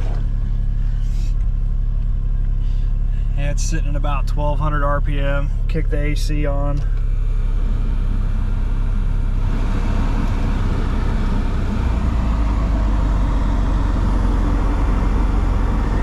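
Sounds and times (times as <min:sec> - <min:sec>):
air-conditioning compressor kicking on: 0:00.0 - 0:16.0
car engine idling: 0:00.0 - 0:16.0.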